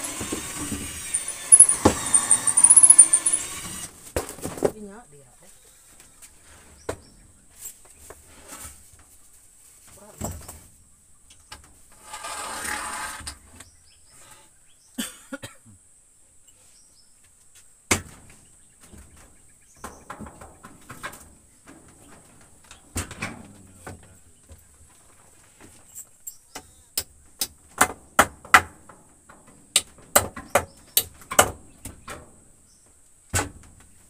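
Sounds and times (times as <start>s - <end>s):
scraping rustle: 7.5s - 10.7s, 20.2s - 26.2s.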